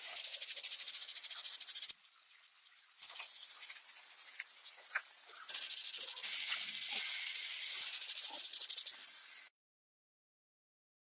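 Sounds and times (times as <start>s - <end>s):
air hissing from a nozzle: 0.0s - 1.9s, 3.0s - 9.5s.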